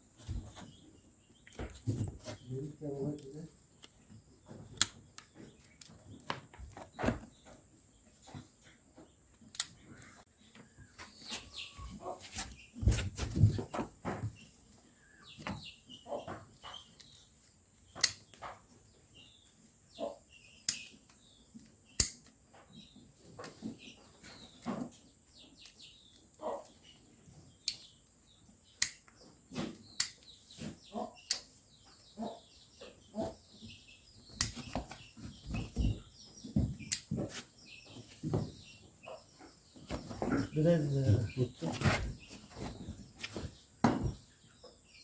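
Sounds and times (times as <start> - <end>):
hand shears snipping hooves: 34.3 - 35.1.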